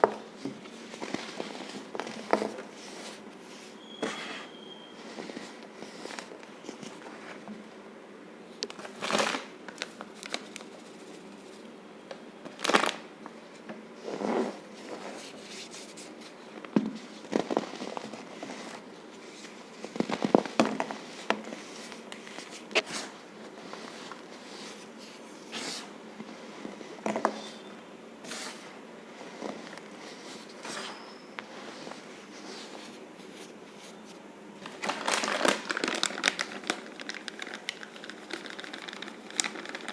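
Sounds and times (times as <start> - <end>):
powder mixture squeaky crunching: 0.9 - 6.3, 19.7 - 39.9.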